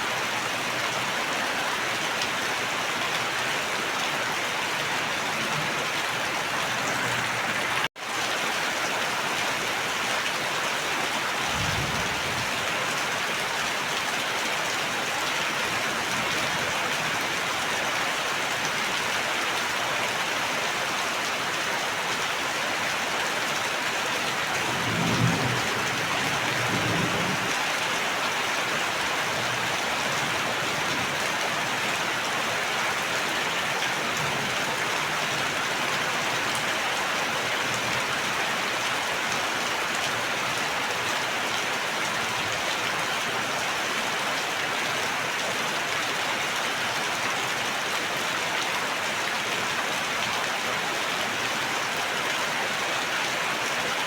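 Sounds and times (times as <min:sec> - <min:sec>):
heavy rain falling: 0:00.0 - 0:54.0
thunder rumbles: 0:11.4 - 0:12.7.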